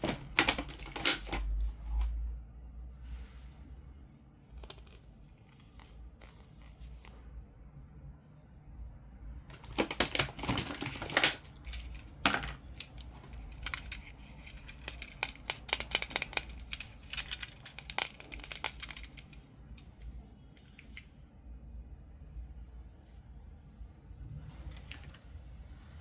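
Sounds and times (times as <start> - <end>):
packaging clicks taps and rustles: 0.0 - 2.1, 4.5 - 7.2, 9.5 - 20.2.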